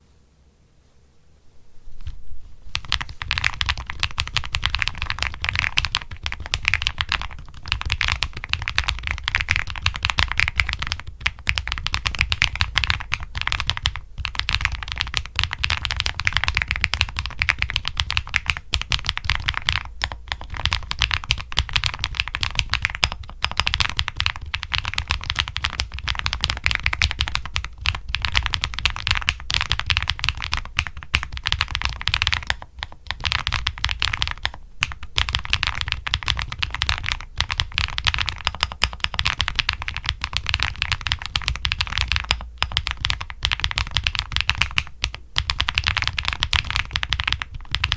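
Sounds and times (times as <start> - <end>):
mechanical keyboard typing: 2.7 - 47.9.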